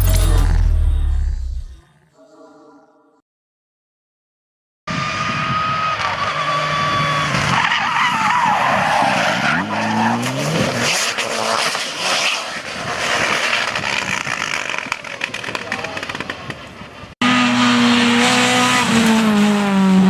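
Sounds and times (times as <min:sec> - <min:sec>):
tyres skidding: 0:05.2 - 0:20.0
rally car engine revving: 0:08.4 - 0:16.5, 0:17.2 - 0:20.0.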